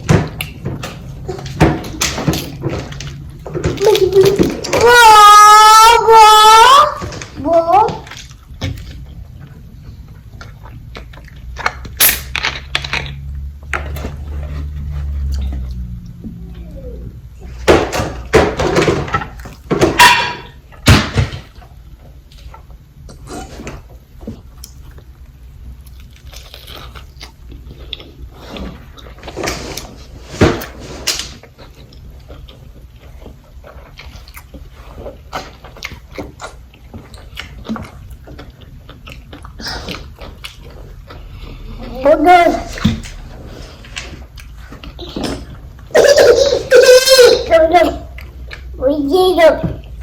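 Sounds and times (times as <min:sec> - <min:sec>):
moist chewing and mouth smacking: 0:31.4 - 0:41.8.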